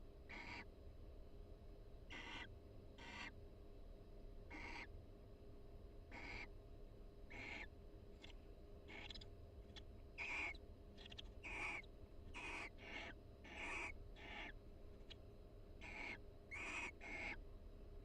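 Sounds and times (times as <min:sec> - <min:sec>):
steady low hum: 0:00.0 - 0:18.0
owls giving hissy calls: 0:00.3 - 0:00.6, 0:02.1 - 0:03.3, 0:04.5 - 0:04.9, 0:06.1 - 0:06.5, 0:07.3 - 0:08.3, 0:08.9 - 0:09.2, 0:10.2 - 0:14.6, 0:15.8 - 0:17.4.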